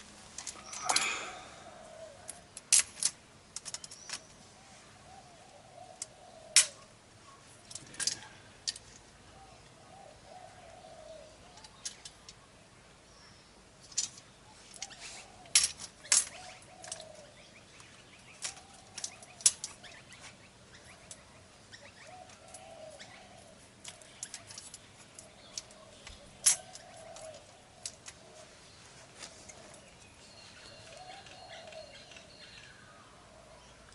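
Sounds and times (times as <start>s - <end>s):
pigeon cooing: 0.6s - 2.5s, 9.3s - 11.5s, 22.0s - 24.6s
metallic clicks of tools: 7.6s - 9.0s.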